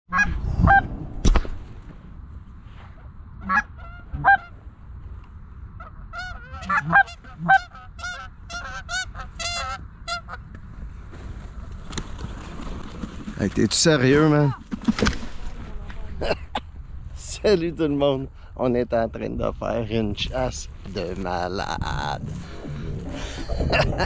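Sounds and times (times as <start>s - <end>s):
sharp crack: 0.9s - 2.2s
geese honking: 3.4s - 4.5s, 5.8s - 10.5s.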